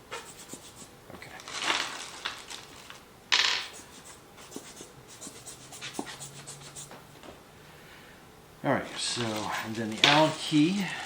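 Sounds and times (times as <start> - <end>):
packing material rustling: 1.3 - 3.1.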